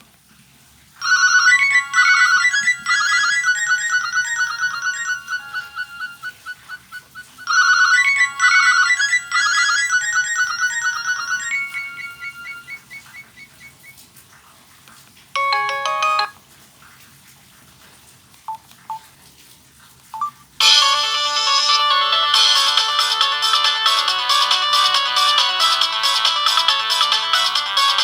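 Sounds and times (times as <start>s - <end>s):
phone ringtone melody: 1.0s - 13.0s, 15.4s - 16.4s, 20.2s - 28.0s.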